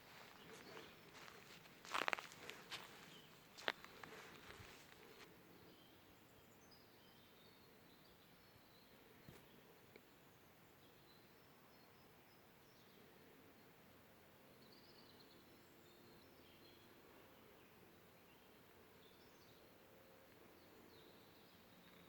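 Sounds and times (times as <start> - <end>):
distant birdsong: 0.0 - 13.8.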